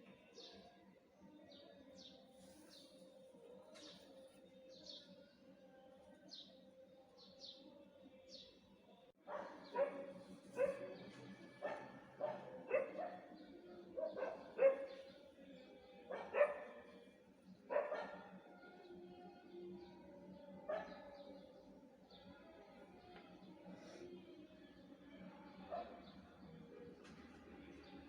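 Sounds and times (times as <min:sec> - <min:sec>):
dog barking: 0:09.2 - 0:15.1, 0:16.1 - 0:17.0, 0:17.7 - 0:18.4, 0:20.7 - 0:21.2, 0:25.7 - 0:26.1.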